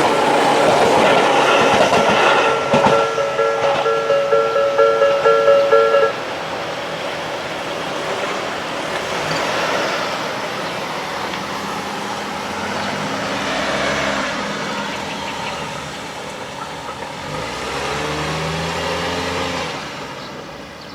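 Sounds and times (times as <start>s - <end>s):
cars passing: 0.0s - 20.9s
level crossing alarm bell dings: 1.9s - 6.4s.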